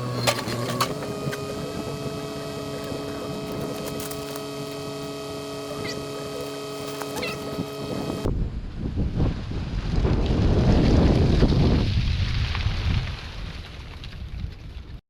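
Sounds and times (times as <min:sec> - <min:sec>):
steady mechanical hum: 0:00.0 - 0:09.5
wind noise on microphone: 0:00.0 - 0:15.0.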